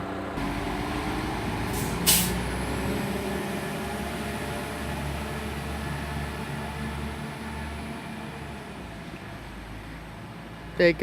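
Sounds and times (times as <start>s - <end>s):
diesel train engines humming: 0.0s - 11.0s
compressed air hiss: 1.7s - 2.4s.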